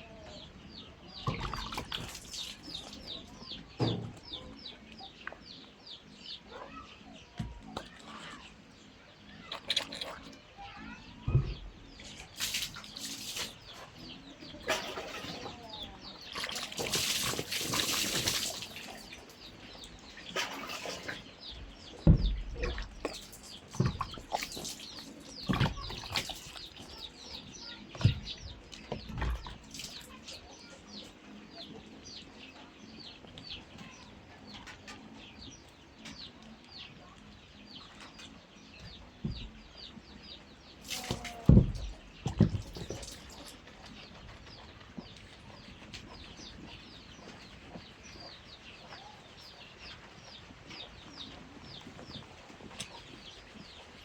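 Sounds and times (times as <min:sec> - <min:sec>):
birds chirping: 0:00.0 - 0:54.0
dull thumps: 0:21.6 - 0:24.6, 0:25.4 - 0:26.7, 0:27.9 - 0:29.6, 0:41.0 - 0:43.1.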